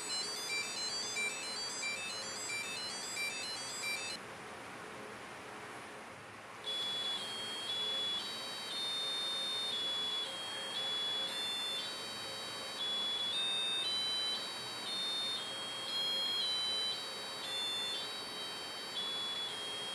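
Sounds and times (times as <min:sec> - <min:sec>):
high buzzy electronic beeps: 0:06.7 - 0:19.9.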